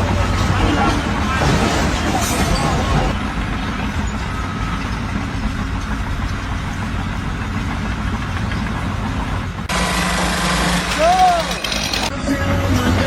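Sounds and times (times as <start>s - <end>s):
engine running steadily: 3.0s - 13.0s.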